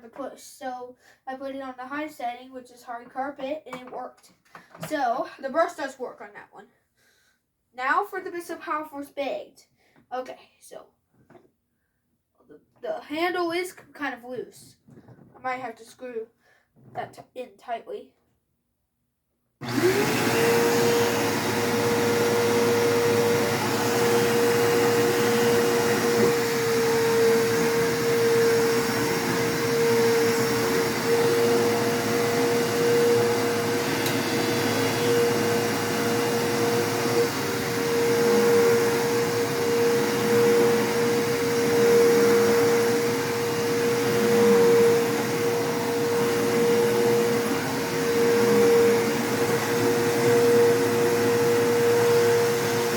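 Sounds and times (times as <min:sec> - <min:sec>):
vacuum cleaner motor whine: 0:19.6 - 0:52.9.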